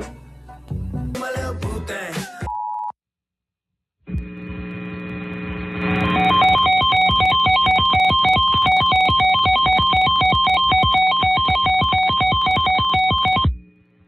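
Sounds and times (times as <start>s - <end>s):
electronic beeping melody: 6.1s - 13.5s
fast low beat: 6.7s - 13.6s.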